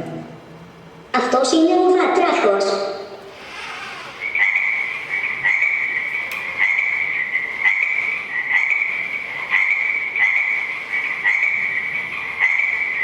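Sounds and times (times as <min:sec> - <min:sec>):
frogs croaking: 0:03.3 - 0:13.0.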